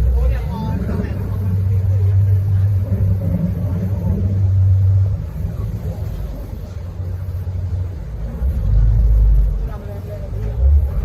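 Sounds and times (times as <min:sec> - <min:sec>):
engine rumble: 0:00.0 - 0:11.0.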